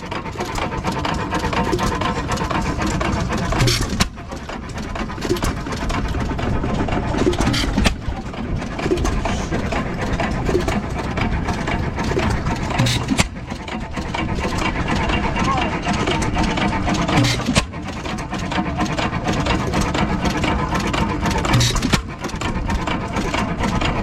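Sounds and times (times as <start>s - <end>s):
stationary gas engines running: 0.0s - 24.0s
sharp knocks: 0.3s - 14.8s.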